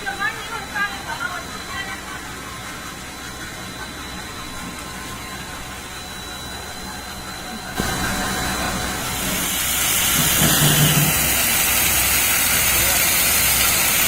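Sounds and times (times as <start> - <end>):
machinery hum and hiss: 0.0 - 14.0
faint high whine: 3.8 - 13.1.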